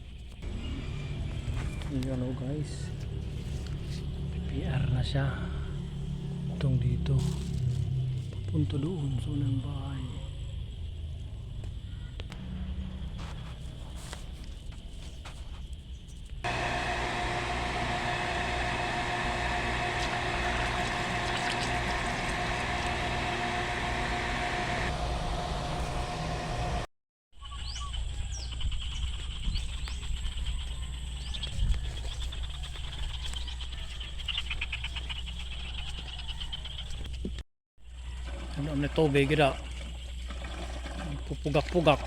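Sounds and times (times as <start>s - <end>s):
water pump humming: 16.4s - 26.9s.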